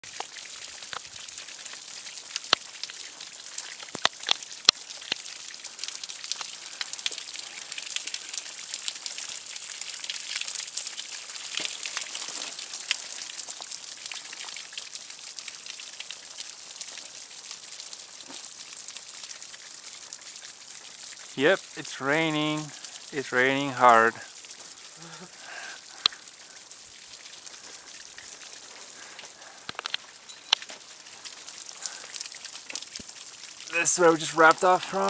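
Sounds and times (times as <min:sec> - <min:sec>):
heavy rain falling: 0:21.4 - 0:26.6, 0:27.2 - 0:35.0.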